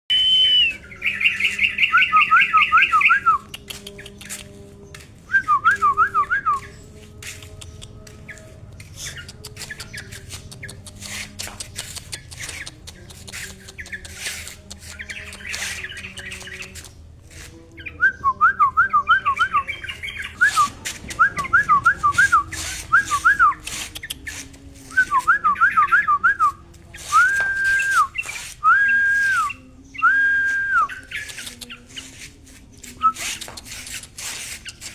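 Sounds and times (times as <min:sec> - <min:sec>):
bird singing whistled notes: 0:00.1 - 0:04.1, 0:17.7 - 0:24.2, 0:24.9 - 0:31.8
scattered clicks: 0:03.2 - 0:04.7, 0:08.9 - 0:17.0, 0:31.1 - 0:31.8.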